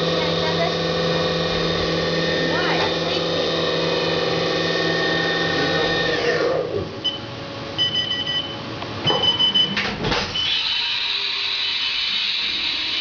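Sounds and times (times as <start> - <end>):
machine whine winding down: 0.0 - 7.0, 10.3 - 13.0
electronic beeps: 7.0 - 9.8.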